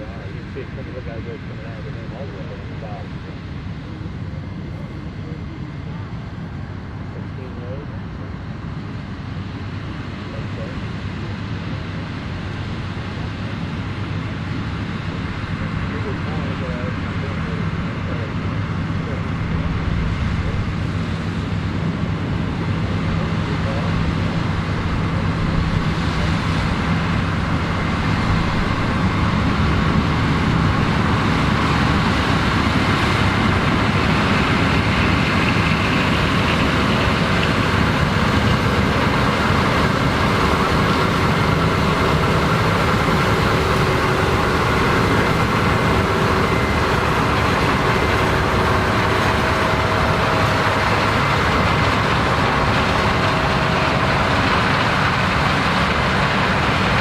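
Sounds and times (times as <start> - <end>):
combine harvester engine drone: 0.0 - 57.0.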